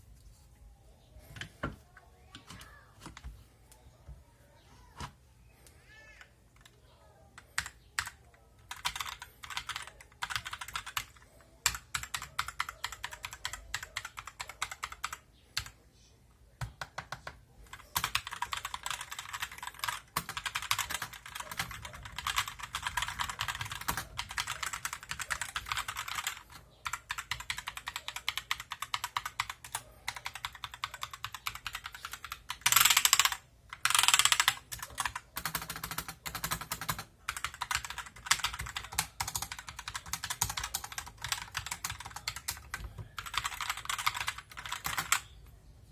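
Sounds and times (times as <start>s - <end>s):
typing on mechanical keyboard: 7.4s - 15.8s, 16.6s - 45.4s.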